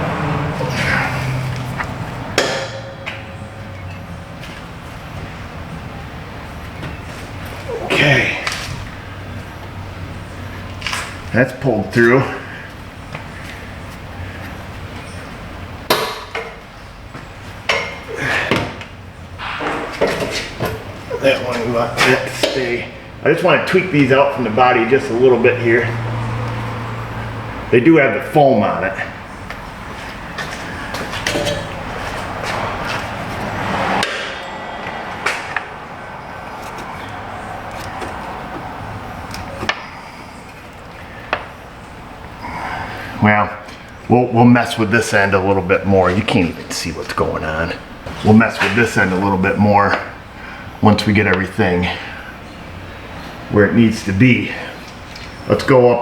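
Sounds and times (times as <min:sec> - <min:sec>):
sharp knock: 0:02.3 - 0:04.6, 0:19.4 - 0:20.9.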